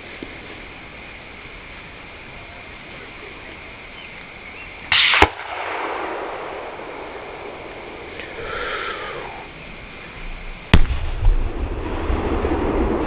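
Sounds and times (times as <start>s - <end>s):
loud rush of hiss: 0.0s - 13.0s
distant rifle shot with echo: 4.9s - 8.1s, 10.7s - 13.0s.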